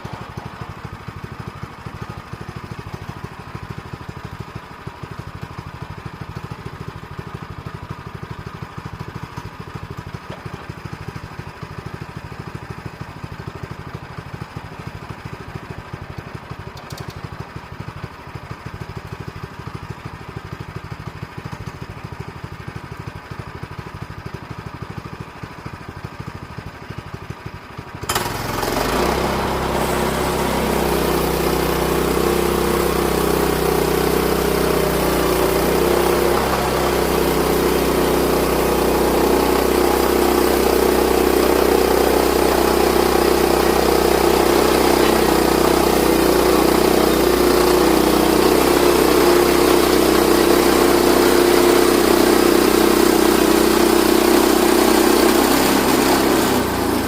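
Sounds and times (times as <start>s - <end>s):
engine idling: 0.0s - 57.0s.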